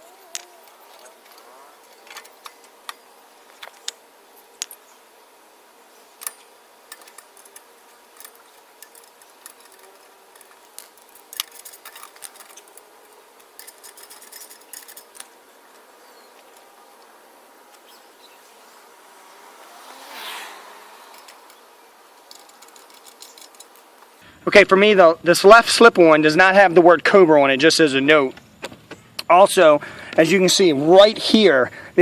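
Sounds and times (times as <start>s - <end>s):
metal hardware clicking and clinking: 0.0s - 4.9s, 6.0s - 17.1s, 21.0s - 24.2s
quick metallic jingling: 6.0s - 16.7s, 21.0s - 24.0s.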